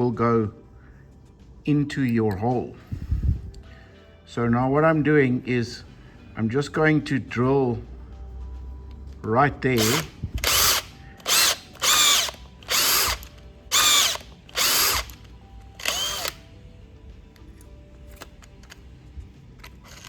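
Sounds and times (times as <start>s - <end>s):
power drill whining in bursts: 9.8s - 15.2s, 15.8s - 16.4s.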